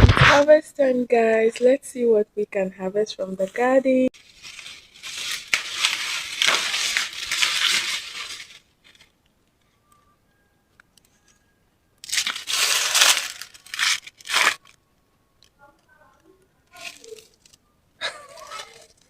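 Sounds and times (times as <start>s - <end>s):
corn husks tearing: 4.2s - 9.1s, 12.0s - 14.8s, 16.7s - 19.0s.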